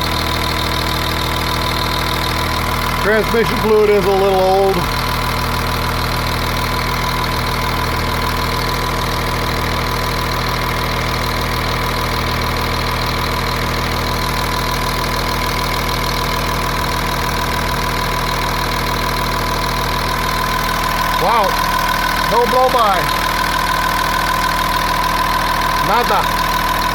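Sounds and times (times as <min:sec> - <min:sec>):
diesel engine idling: 0:00.0 - 0:26.9.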